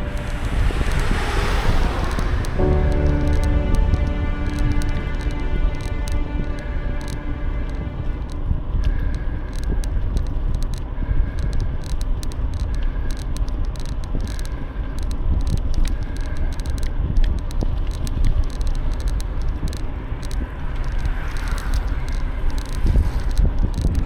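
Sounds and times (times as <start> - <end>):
wind rumbling on microphone: 0.0 - 24.0
bike clicks and rattles: 9.5 - 24.0.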